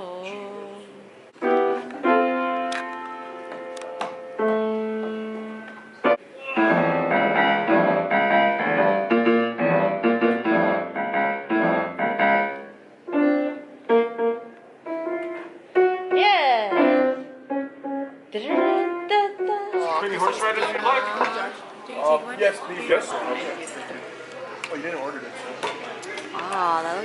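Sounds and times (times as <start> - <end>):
piano music: 1.4 - 20.7.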